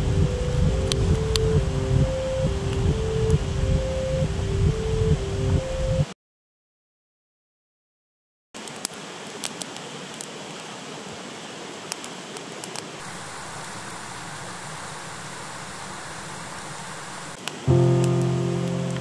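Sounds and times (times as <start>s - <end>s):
wood fire hissing: 12.6s - 18.3s.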